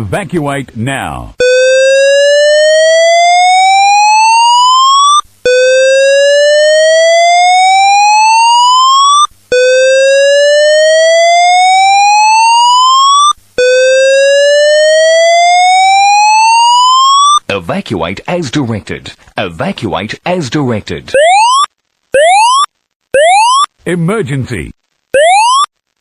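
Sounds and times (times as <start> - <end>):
fire alarm whoop tone: 1.4 - 17.4, 21.2 - 23.7, 25.2 - 25.7.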